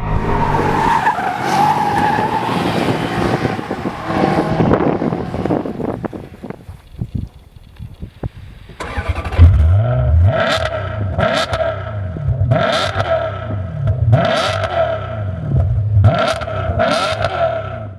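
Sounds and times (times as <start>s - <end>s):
car engine revving hard: 0.0s - 6.6s, 8.8s - 17.9s
crackly exhaust bursts: 2.2s - 9.6s.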